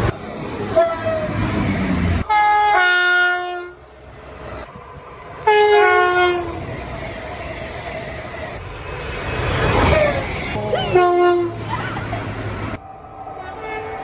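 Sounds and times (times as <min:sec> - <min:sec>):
train rumbling past: 0:00.0 - 0:14.0
train air horn blasts: 0:02.2 - 0:03.8, 0:05.4 - 0:06.6, 0:10.6 - 0:11.6.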